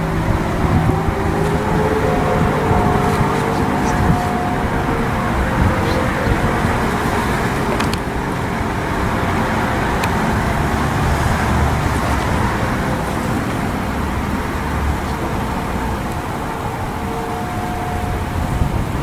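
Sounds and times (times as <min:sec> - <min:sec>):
faint steady tone: 0:00.0 - 0:19.0
road traffic rumble: 0:00.0 - 0:19.0.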